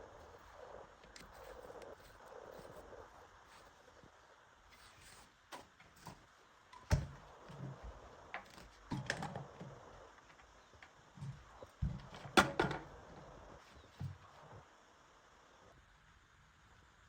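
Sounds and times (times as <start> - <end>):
hard objects knocking and clicking: 6.8 - 13.0.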